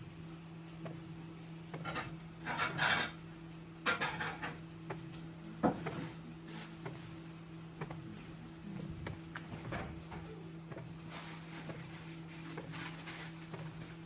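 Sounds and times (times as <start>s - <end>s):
steady low hum: 0.0s - 14.0s
rubbing and scraping handling noises: 10.8s - 14.0s.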